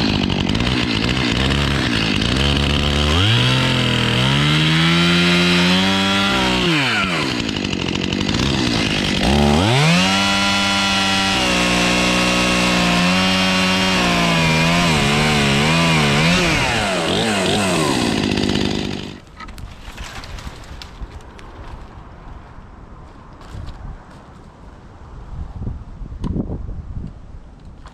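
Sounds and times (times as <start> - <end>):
chainsaw revving: 0.0 - 19.2.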